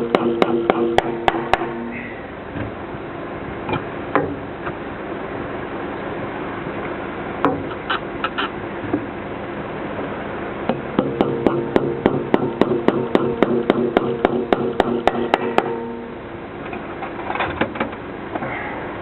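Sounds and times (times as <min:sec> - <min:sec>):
hammer blows on metal bracket: 0:00.0 - 0:02.1, 0:11.0 - 0:16.1.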